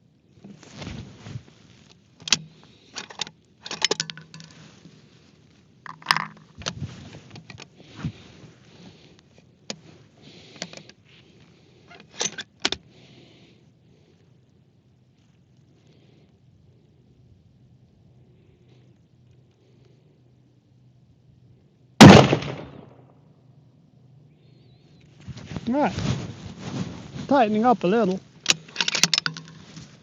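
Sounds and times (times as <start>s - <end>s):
metallic clicks of handled gear: 2.2s - 4.6s, 28.4s - 29.8s.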